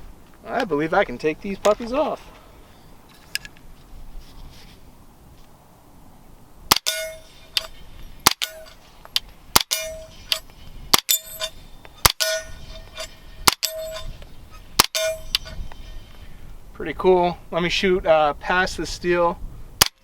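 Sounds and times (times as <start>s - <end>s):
steel target ringing: 6.7s - 8.8s, 9.6s - 15.6s.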